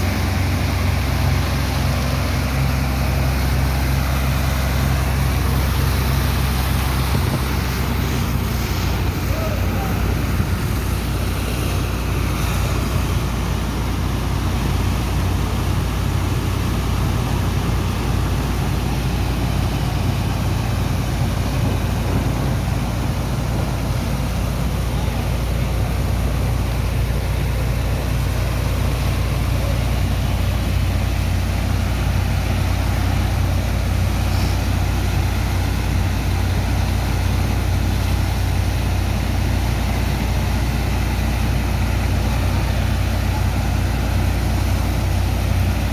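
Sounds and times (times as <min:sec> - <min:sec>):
dredger engine droning: 0:00.0 - 0:45.9.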